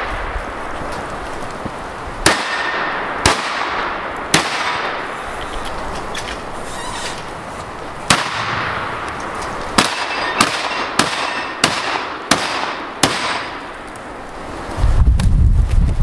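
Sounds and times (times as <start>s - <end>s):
shotgun shots with echo: 2.2s - 5.1s, 8.1s - 8.9s, 9.8s - 13.6s.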